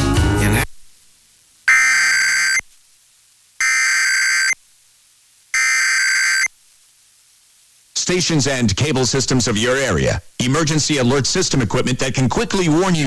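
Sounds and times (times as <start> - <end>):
buzzing digital data tones: 1.7 - 2.7, 3.6 - 4.6, 5.5 - 6.6.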